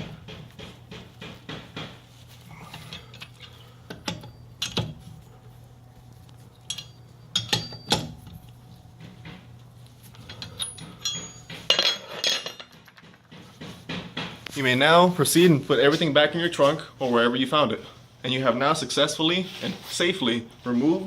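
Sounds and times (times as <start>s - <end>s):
tire iron clanking on lug nuts: 6.7s - 8.4s, 9.0s - 14.5s.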